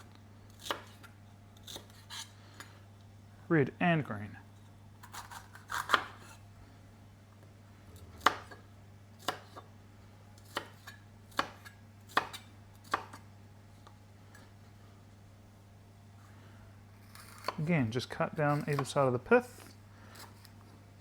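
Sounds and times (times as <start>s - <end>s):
knife chopping on board: 5.1s - 6.2s, 8.2s - 8.6s, 9.2s - 9.7s, 10.4s - 13.2s, 18.5s - 19.0s.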